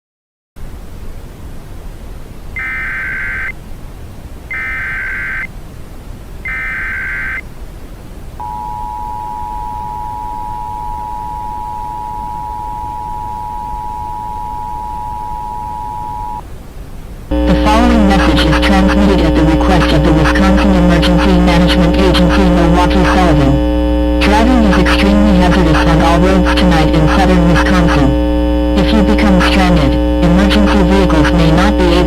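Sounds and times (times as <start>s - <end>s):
low static hiss: 0.6s - 32.0s
two-tone attention signal: 2.6s - 3.5s, 6.5s - 7.4s, 8.4s - 16.4s
shrill warbling data tones: 2.6s - 3.6s, 4.5s - 5.5s, 6.5s - 7.4s.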